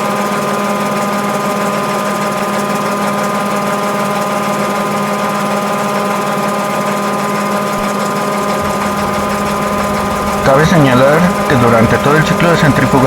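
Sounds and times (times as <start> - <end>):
washing machine spinning: 7.8 - 13.0.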